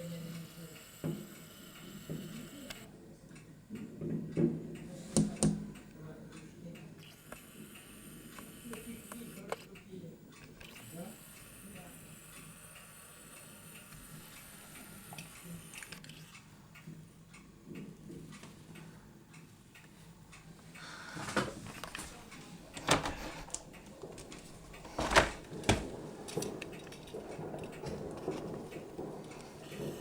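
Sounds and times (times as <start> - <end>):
fireworks bangs: 23.8 - 30.0.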